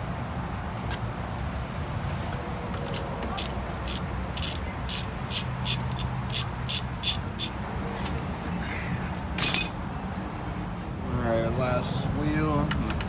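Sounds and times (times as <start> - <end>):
ratchet wrench clicking: 2.8 - 7.6, 9.4 - 9.7.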